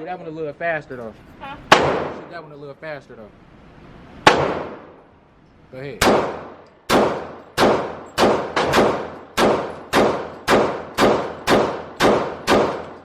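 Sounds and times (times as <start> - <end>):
pistol shots echoing: 1.7 - 2.3, 4.3 - 5.0, 6.0 - 13.0.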